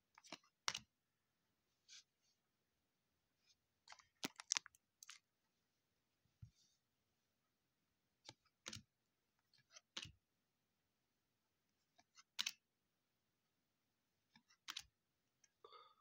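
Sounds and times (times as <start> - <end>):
card stock clicking and snapping: 14.4 - 14.9.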